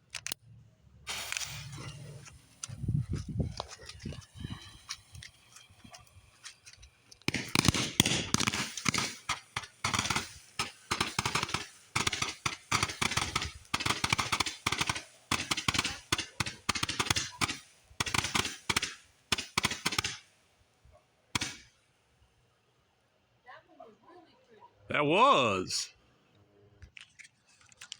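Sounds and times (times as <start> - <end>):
fireworks cracking and banging: 1.1 - 20.3, 21.4 - 21.7.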